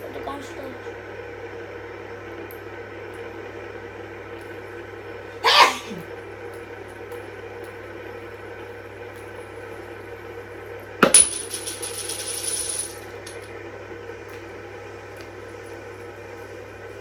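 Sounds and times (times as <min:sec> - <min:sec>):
person sneezing: 0:05.4 - 0:06.1.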